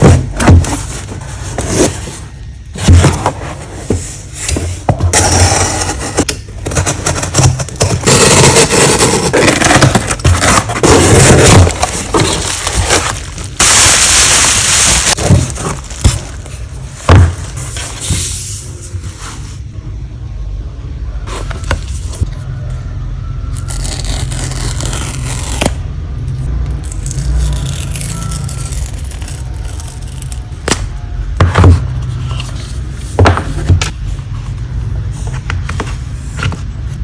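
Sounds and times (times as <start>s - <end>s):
cardboard packaging scraping and tearing: 0.0s - 18.7s, 23.6s - 25.8s, 26.8s - 30.7s.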